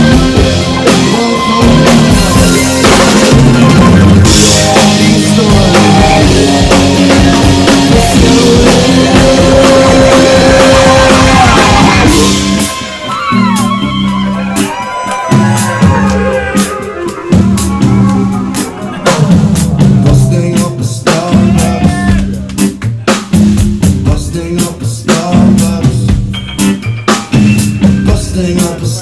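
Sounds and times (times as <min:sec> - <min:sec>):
drum hits: 0:00.0 - 0:13.9, 0:14.6 - 0:28.8
bass notes: 0:00.0 - 0:29.0
rock band playing: 0:00.0 - 0:29.0
gliding high notes: 0:12.0 - 0:22.6.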